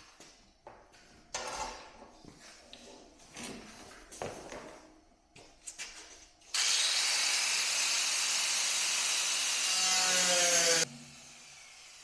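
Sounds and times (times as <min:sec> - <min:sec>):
cut-off tool grinding sheet metal: 0:06.6 - 0:12.0.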